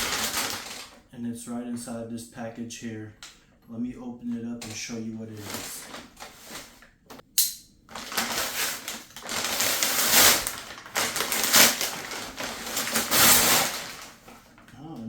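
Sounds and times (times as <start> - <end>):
packaging crackling and rustling: 0.0 - 1.0, 4.6 - 6.9, 7.9 - 14.8
package tearing rip: 7.9 - 14.1.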